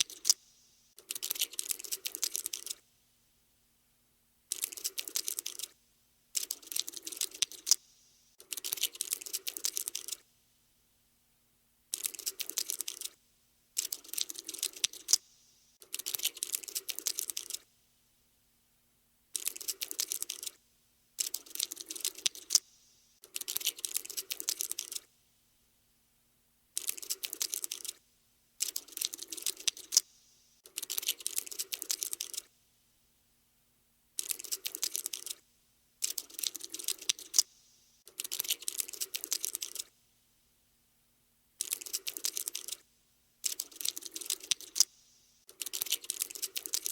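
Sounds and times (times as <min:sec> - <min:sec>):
insect legs skittering clicks: 0:00.0 - 0:02.8, 0:04.5 - 0:05.8, 0:06.4 - 0:10.2, 0:11.9 - 0:13.2, 0:13.8 - 0:17.7, 0:19.4 - 0:20.6, 0:21.2 - 0:25.1, 0:26.8 - 0:28.0, 0:28.6 - 0:32.5, 0:34.2 - 0:35.4, 0:36.0 - 0:39.9, 0:41.6 - 0:42.8, 0:43.4 - 0:46.9.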